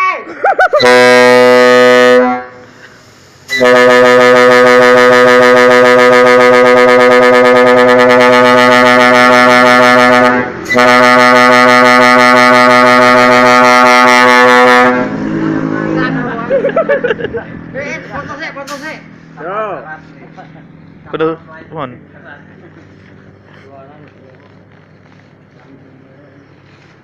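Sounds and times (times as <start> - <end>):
multi-tone air horn blasts: 0.7 - 15.3.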